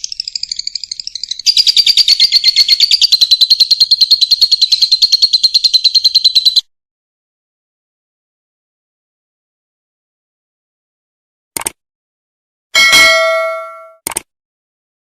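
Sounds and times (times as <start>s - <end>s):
lovebird chattering: 0.0s - 6.6s.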